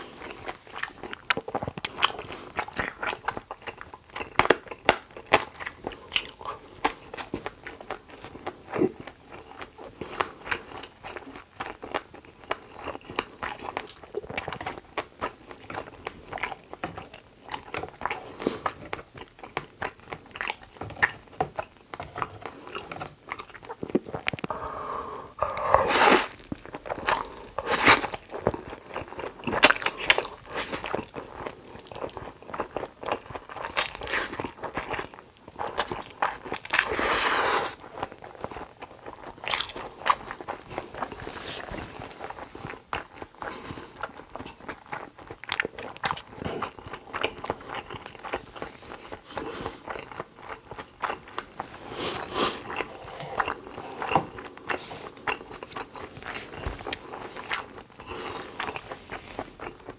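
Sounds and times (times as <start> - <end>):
chewing and crunching: 0.0 - 59.9
wet mouth clicks: 24.3 - 28.2.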